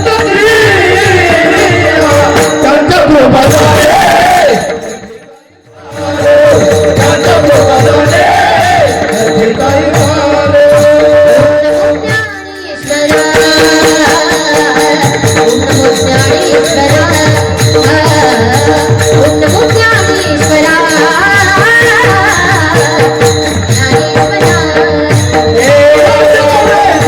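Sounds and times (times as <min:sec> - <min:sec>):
harmonium: 0:00.0 - 0:27.0
people singing: 0:00.0 - 0:27.0
hand drum beat: 0:05.8 - 0:27.0.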